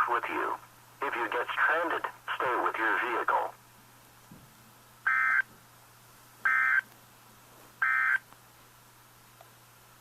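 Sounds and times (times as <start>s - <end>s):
faint steady hum: 0.0s - 10.0s
electronic data tone warble: 5.1s - 5.4s, 6.5s - 6.8s, 7.8s - 8.2s.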